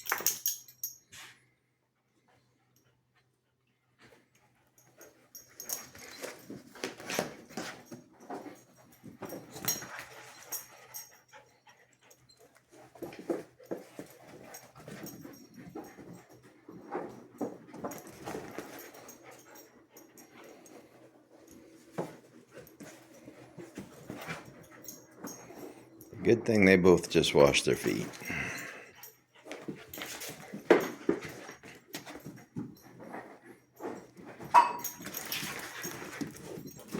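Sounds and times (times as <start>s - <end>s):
dogs panting: 7.4s - 26.2s.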